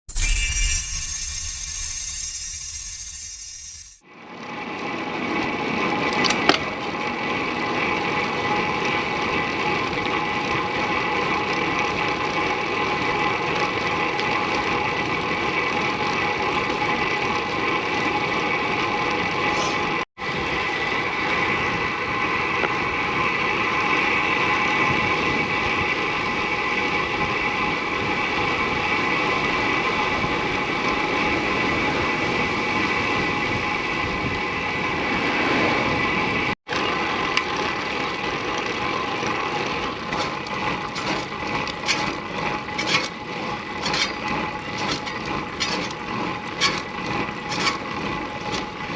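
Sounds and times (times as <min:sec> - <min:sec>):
disc brake high ringing tone: 0:00.1 - 0:04.0
bike riding rushing sound: 0:00.1 - 0:48.9.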